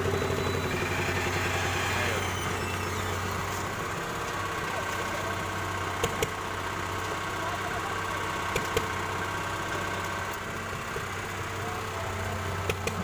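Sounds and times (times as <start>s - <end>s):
heavy machine engine humming: 0.0s - 13.0s
sharp clicks: 8.5s - 8.9s, 12.7s - 13.0s.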